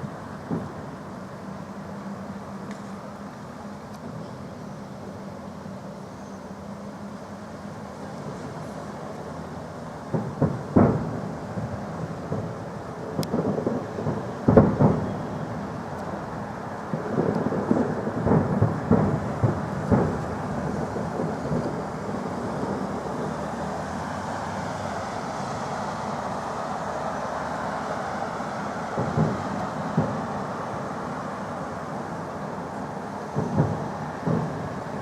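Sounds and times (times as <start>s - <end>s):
fireworks booming: 0.2s - 1.2s, 10.1s - 35.0s.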